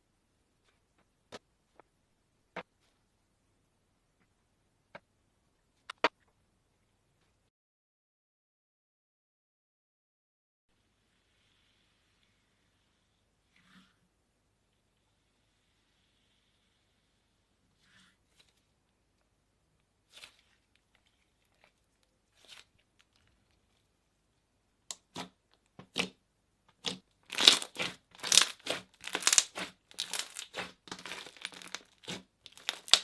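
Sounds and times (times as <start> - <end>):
slime popping and squelching: 24.9 - 33.0.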